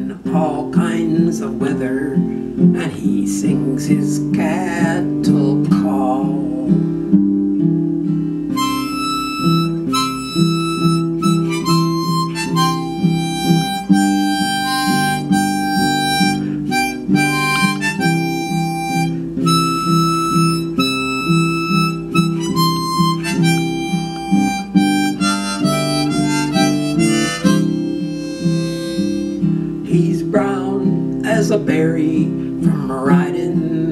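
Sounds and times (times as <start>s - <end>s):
strummed acoustic guitar: 0.0s - 33.9s
harmonica melody: 4.2s - 30.3s.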